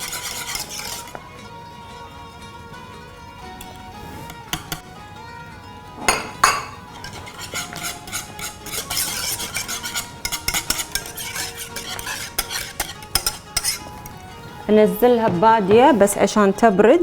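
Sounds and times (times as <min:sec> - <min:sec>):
utensil scraping a pot: 0:00.0 - 0:01.2, 0:03.4 - 0:05.2, 0:06.0 - 0:16.4.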